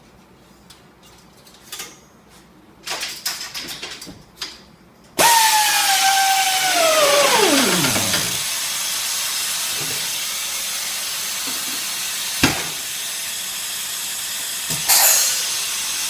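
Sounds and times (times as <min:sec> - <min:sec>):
air motor hissing and whining: 0:05.2 - 0:15.1.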